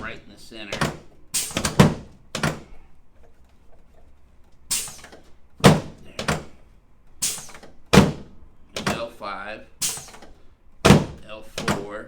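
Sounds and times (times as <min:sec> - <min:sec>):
adjusting table sharp thunks: 0:00.0 - 0:02.8, 0:04.7 - 0:06.6, 0:07.2 - 0:09.1, 0:09.8 - 0:12.0.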